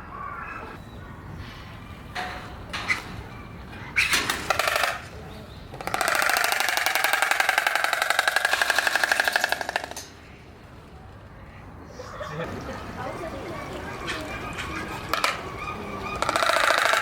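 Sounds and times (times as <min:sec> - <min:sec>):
stork bill clattering: 0:02.1 - 0:12.3, 0:13.9 - 0:17.0.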